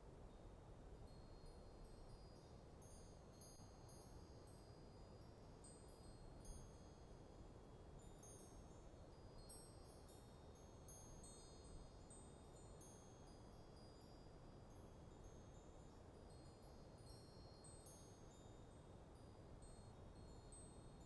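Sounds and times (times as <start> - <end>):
wind chimes tinkling: 8.0 - 21.0.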